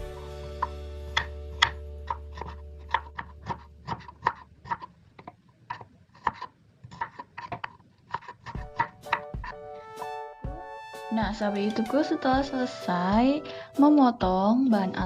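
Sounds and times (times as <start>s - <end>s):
knife chopping on cutting board: 0.1s - 4.9s, 5.7s - 9.6s.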